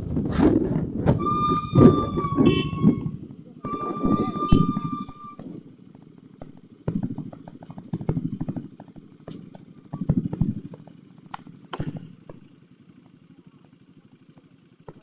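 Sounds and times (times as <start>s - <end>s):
motorcycle engine idling: 1.1s - 15.0s.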